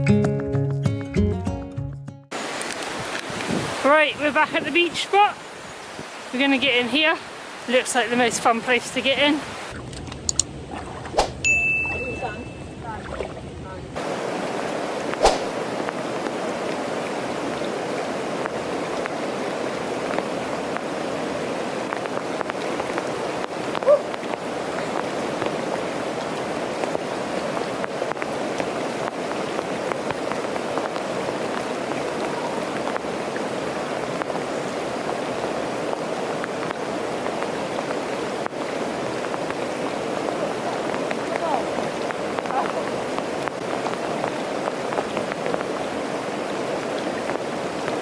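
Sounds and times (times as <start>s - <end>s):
river water flowing: 2.3s - 48.0s
rain falling: 13.4s - 48.0s.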